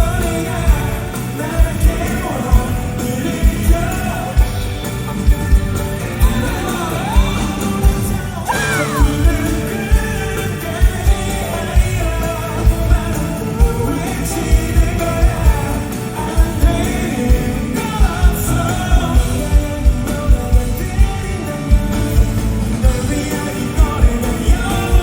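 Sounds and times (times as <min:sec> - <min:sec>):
live pop-rock band: 0:00.0 - 0:25.0.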